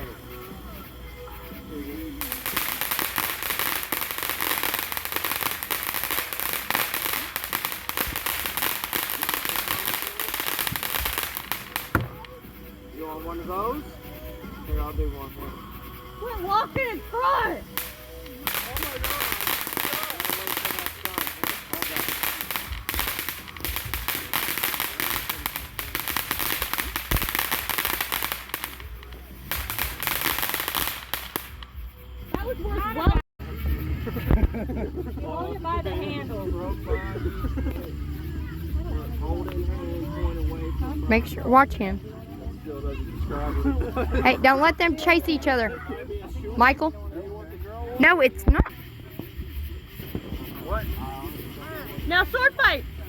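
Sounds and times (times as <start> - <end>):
fireworks crackling: 0.0 - 53.0
deep thump: 11.9 - 12.2.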